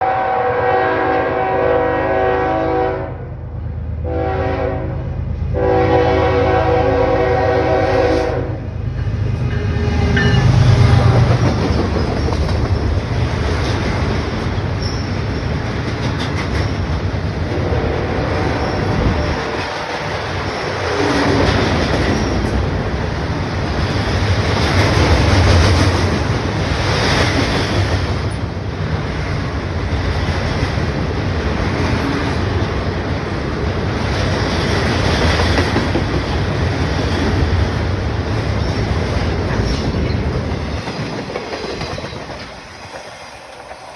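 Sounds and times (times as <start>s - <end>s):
locomotive air horn blasts: 0.0s - 3.3s, 4.0s - 10.3s, 17.5s - 19.9s
train cars rushing past: 0.0s - 43.9s.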